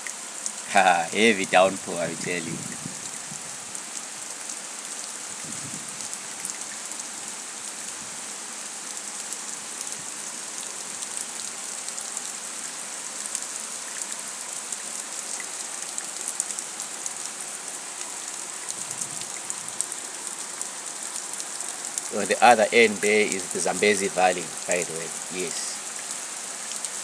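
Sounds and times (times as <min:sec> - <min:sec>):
heavy rain pouring: 0:00.6 - 0:06.6, 0:17.8 - 0:27.0.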